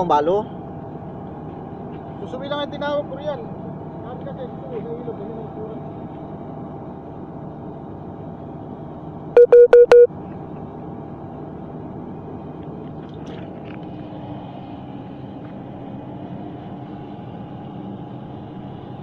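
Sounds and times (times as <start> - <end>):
low mechanical hum: 0.0 - 19.0
electronic beeps: 9.4 - 10.1.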